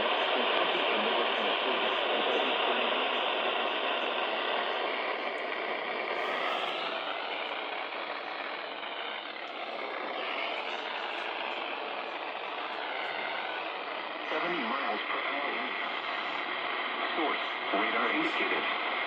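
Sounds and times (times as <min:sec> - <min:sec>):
radio static hiss: 0:00.0 - 0:19.0.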